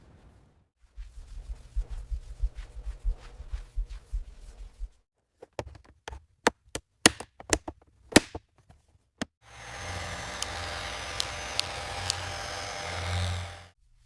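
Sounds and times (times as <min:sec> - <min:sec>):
machine hum: 0:09.5 - 0:13.8.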